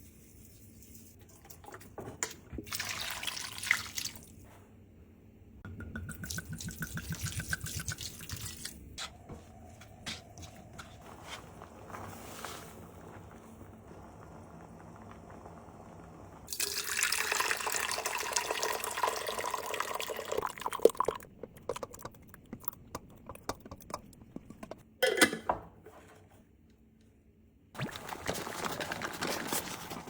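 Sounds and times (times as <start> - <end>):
water dripping: 5.7 - 8.7, 16.5 - 24.8
water running: 5.7 - 24.8.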